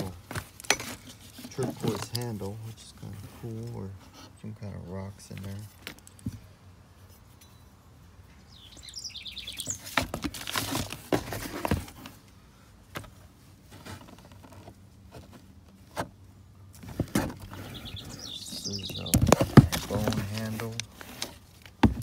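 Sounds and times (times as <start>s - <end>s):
bird chirping: 7.4s - 10.2s, 17.4s - 20.8s.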